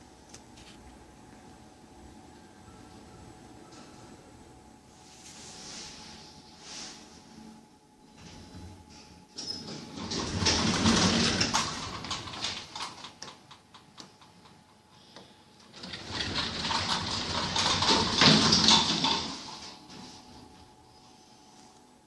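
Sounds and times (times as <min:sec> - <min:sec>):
lift doors sliding: 0:08.2 - 0:13.2, 0:15.6 - 0:20.2.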